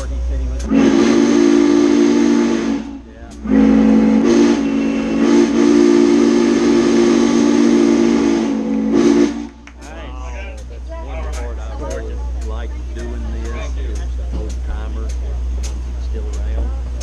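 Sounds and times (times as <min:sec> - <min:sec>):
steam whistle blowing: 0:00.6 - 0:09.6.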